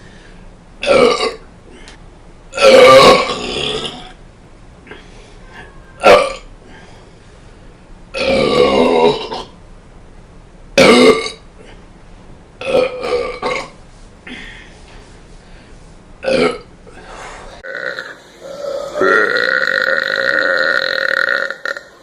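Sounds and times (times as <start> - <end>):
loud belches: 0.8 - 1.4, 2.6 - 4.1, 5.6 - 6.5, 8.1 - 9.6, 10.8 - 11.4, 12.6 - 13.8, 16.2 - 16.7, 17.6 - 22.0.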